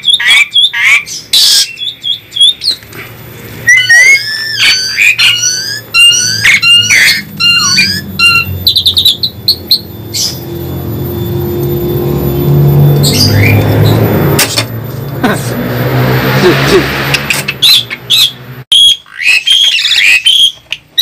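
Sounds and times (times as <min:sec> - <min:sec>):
starlings singing: 0:00.0 - 0:15.2.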